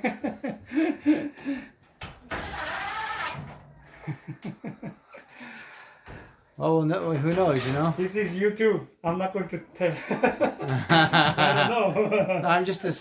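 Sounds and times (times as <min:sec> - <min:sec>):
small electric motor whirring: 0:02.3 - 0:03.4.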